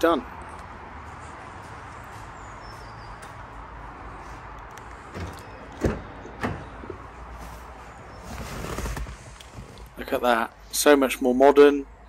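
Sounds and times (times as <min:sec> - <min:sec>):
car door clunks: 0:05.1 - 0:07.1.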